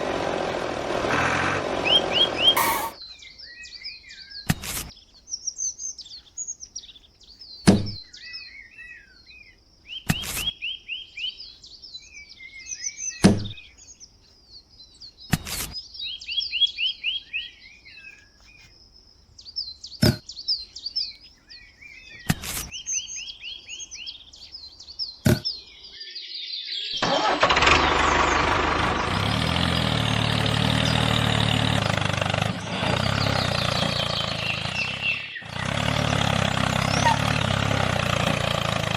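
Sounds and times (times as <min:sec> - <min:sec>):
small motor running: 0:00.0 - 0:03.0
birds chirping: 0:00.0 - 0:38.9.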